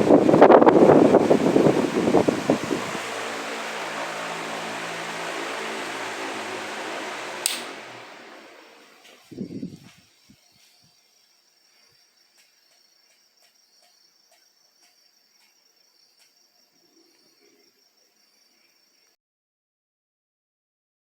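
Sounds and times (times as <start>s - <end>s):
faint ticks: 12.3s - 16.4s.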